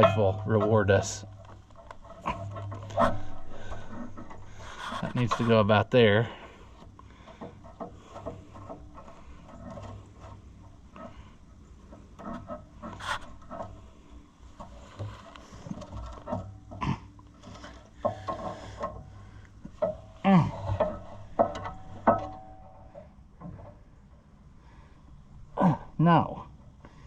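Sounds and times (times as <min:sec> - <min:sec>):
metal fittings clicking and scraping: 0:00.0 - 0:14.0
man grunting and groaning: 0:20.2 - 0:20.7, 0:25.6 - 0:26.0.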